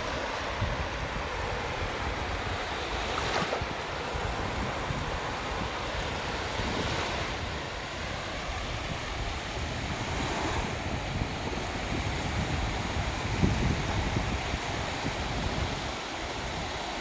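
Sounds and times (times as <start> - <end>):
sea waves breaking on beach: 0.0 - 17.0.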